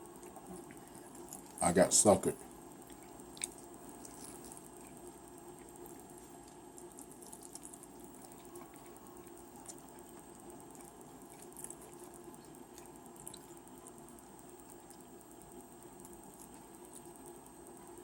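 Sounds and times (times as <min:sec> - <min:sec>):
low room hum: 0:00.0 - 0:18.0
wet chewing clicks: 0:02.8 - 0:17.8.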